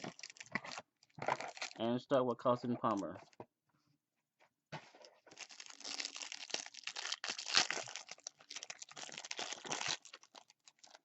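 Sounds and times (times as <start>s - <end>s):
card pack wrapper crinkling: 0.0s - 1.8s, 5.0s - 11.0s.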